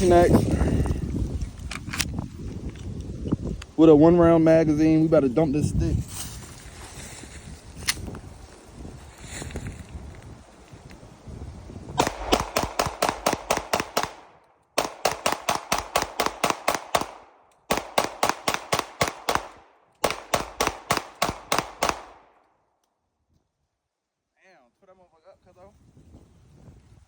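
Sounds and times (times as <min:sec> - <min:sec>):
pistol firing rapid shots: 0:12.0 - 0:22.4.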